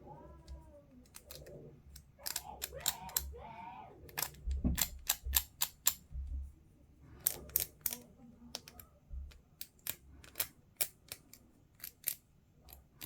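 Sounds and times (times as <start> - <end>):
tools clicking on plastic parts: 1.0 - 3.3, 4.1 - 6.1, 7.2 - 13.0.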